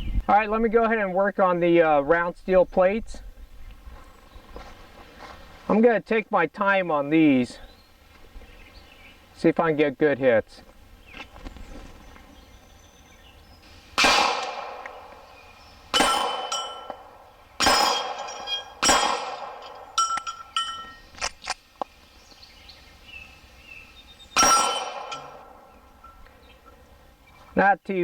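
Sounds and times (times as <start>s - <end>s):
steel plates clanging: 13.7s - 21.5s, 24.3s - 26.3s
pistol shots: 13.8s - 21.6s, 24.4s - 26.0s
light metallic clinks: 14.4s - 21.9s, 24.3s - 26.4s.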